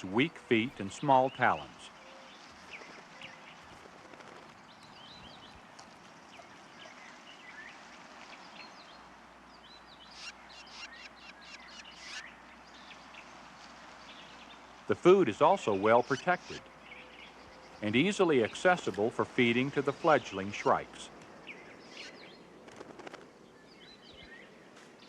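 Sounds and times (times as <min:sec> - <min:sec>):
faint background hiss: 0:00.0 - 0:25.0
high bird chirps: 0:09.9 - 0:13.0, 0:21.5 - 0:22.4.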